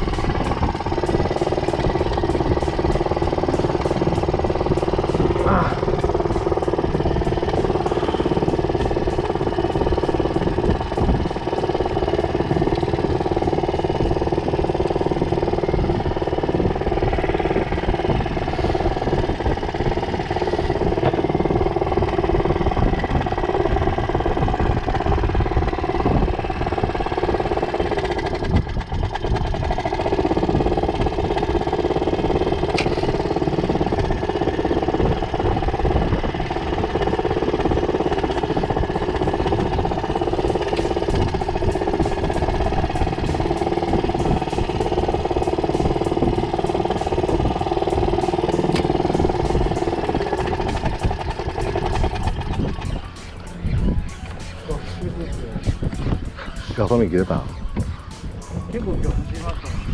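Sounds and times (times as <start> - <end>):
outboard motor running: 0.0 - 59.9.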